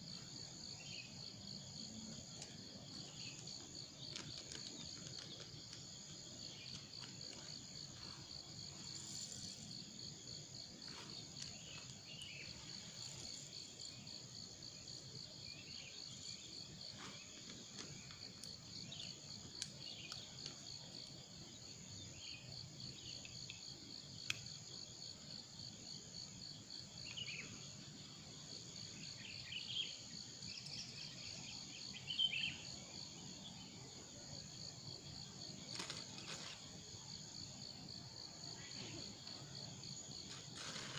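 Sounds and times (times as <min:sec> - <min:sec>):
insects trilling: 0:00.0 - 0:40.9.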